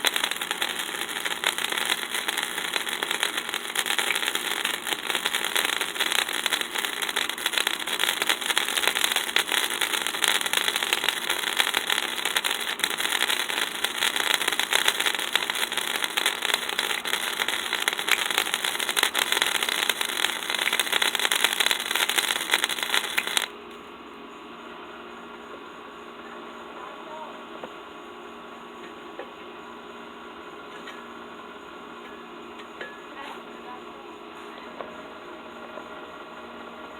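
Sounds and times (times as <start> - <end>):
electric arc welding crackle: 0.0 - 23.6.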